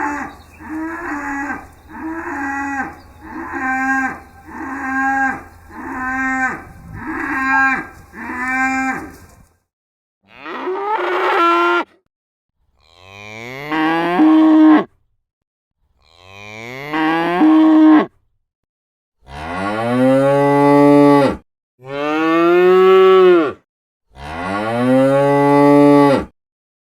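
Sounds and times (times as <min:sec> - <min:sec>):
cattle mooing: 0:00.0 - 0:09.5.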